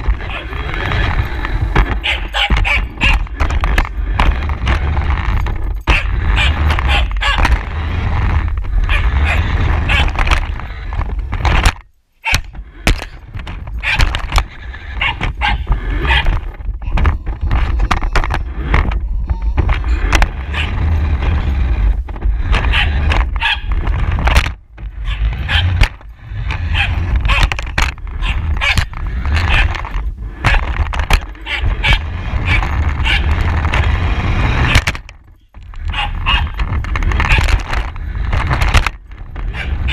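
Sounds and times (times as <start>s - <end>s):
sharp knocks and clatters: 0.0s - 39.9s
steady low rumble: 0.0s - 39.9s
dog barking and yipping: 0.2s - 1.0s, 2.0s - 3.3s, 5.9s - 7.6s, 8.8s - 10.2s, 13.8s - 16.5s, 20.4s - 21.0s, 22.6s - 23.8s, 25.0s - 25.8s, 26.6s - 27.6s, 28.2s - 29.8s, 31.3s - 33.5s, 35.8s - 36.6s, 39.5s - 39.9s.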